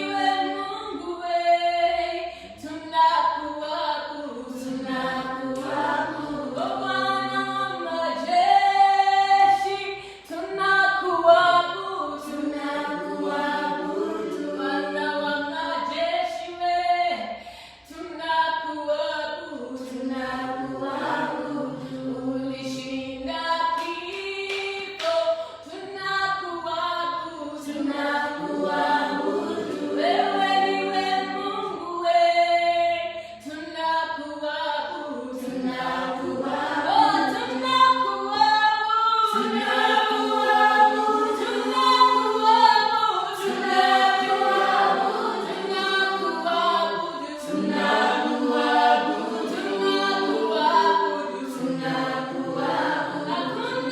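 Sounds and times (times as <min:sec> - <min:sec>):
choir singing gospel in harmony: 0:00.0 - 0:53.9
hand claps: 0:05.4 - 0:05.8, 0:23.8 - 0:25.4.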